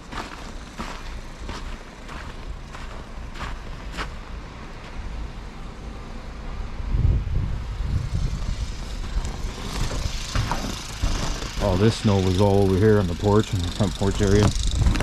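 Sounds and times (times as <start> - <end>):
footsteps crunching in snow: 0.0 - 5.0, 8.4 - 15.0.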